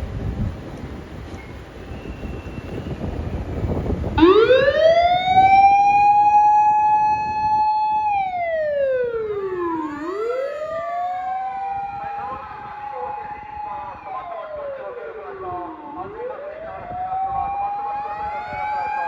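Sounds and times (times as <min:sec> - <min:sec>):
low road rumble: 0:00.0 - 0:19.0
mechanical motor siren wailing: 0:04.2 - 0:19.0.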